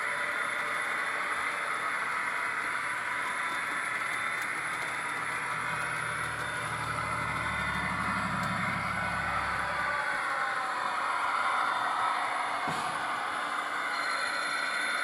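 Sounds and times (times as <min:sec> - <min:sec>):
model train running hiss: 0:00.0 - 0:15.0
low diesel engine throb: 0:04.1 - 0:10.7.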